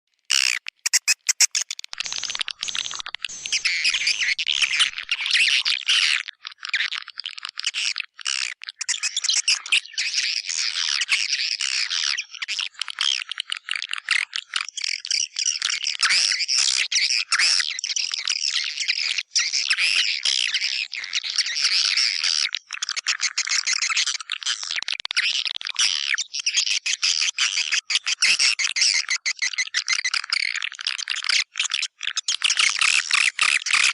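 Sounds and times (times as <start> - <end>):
swiftlets chirping and twittering: 0.3 - 5.6.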